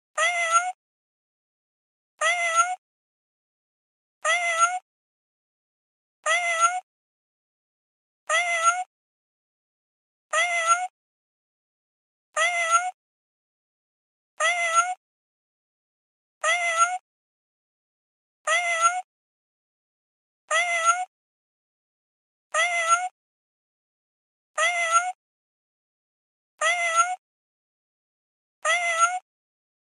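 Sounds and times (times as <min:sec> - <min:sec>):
kitten meowing: 0:00.2 - 0:00.8, 0:06.3 - 0:06.8, 0:28.6 - 0:29.2.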